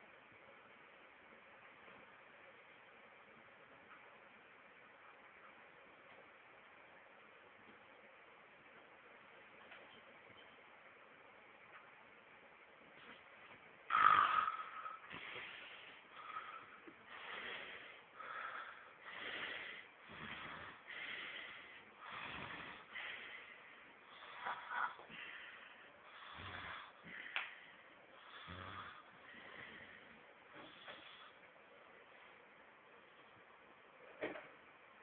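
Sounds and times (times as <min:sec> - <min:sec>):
man snoring: 0:13.9 - 0:15.4, 0:18.4 - 0:21.2, 0:22.0 - 0:23.0, 0:26.1 - 0:27.4, 0:28.2 - 0:30.1.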